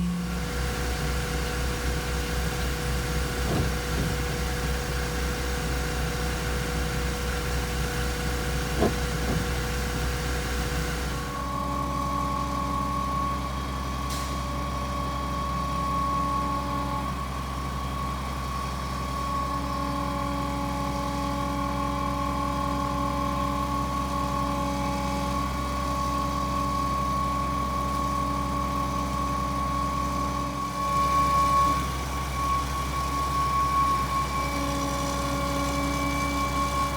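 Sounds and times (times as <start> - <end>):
engine rumbling: 0.0 - 15.8.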